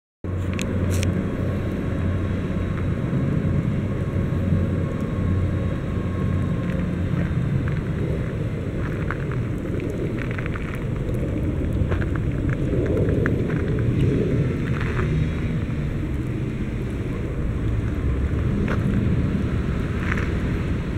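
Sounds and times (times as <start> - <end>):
motor vehicle drone: 0.2 - 20.9
road noise: 0.2 - 20.9.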